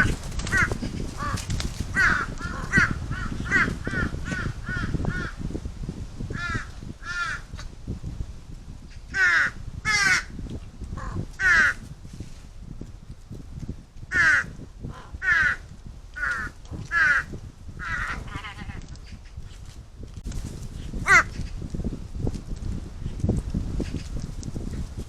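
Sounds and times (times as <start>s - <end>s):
wind rumble on microphone: 0.0s - 25.0s
crows cawing: 0.5s - 5.4s, 6.4s - 7.5s, 9.2s - 10.3s, 11.0s - 11.8s, 14.1s - 15.6s, 16.2s - 18.8s, 21.1s - 21.3s.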